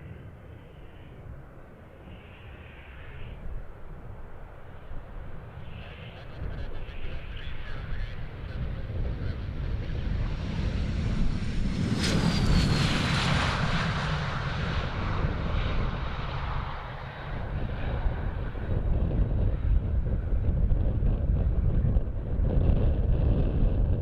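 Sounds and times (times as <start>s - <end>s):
jet passing: 9.3s - 18.9s.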